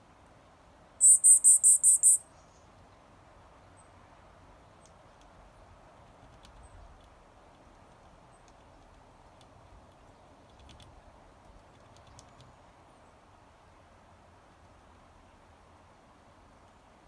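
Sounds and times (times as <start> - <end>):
background hiss: 0.0 - 4.5
high bird chirp: 1.0 - 2.2.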